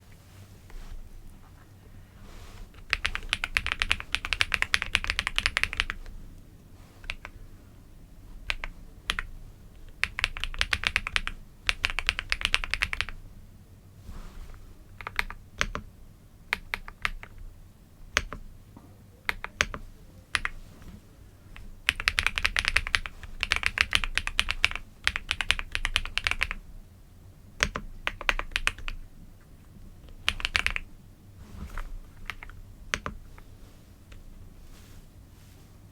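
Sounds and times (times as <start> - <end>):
keyboard typing: 2.7 - 6.2, 7.0 - 7.4, 8.4 - 13.2, 14.9 - 15.9, 16.5 - 17.5, 18.1 - 18.5, 19.2 - 20.6, 21.5 - 26.6, 27.6 - 29.1, 30.0 - 30.9, 31.7 - 33.5.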